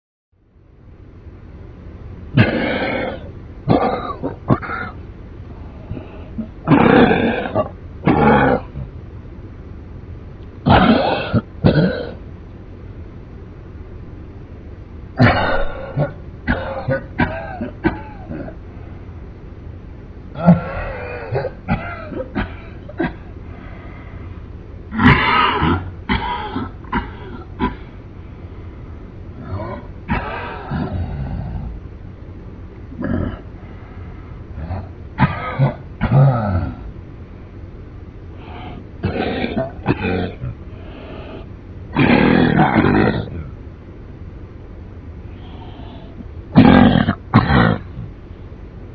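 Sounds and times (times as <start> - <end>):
man coughing: 2.4 - 5.0, 15.2 - 18.6, 20.3 - 23.4, 24.9 - 28.0, 29.4 - 31.1, 34.6 - 36.8, 39.0 - 40.5.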